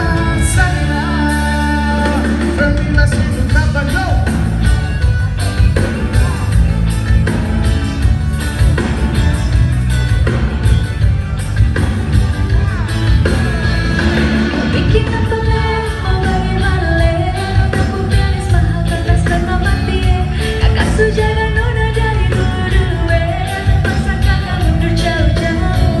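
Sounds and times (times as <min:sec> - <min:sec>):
person singing: 0:00.0 - 0:04.4, 0:14.6 - 0:26.0
bass: 0:00.0 - 0:26.0
drums: 0:00.0 - 0:26.0.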